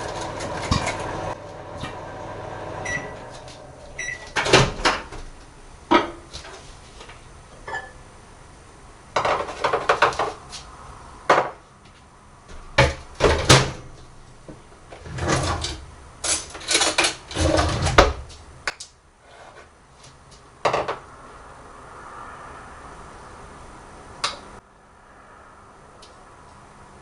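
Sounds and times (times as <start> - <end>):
kitchen knocks and clattering: 5.9 - 6.3, 9.2 - 10.4, 20.7 - 21.0.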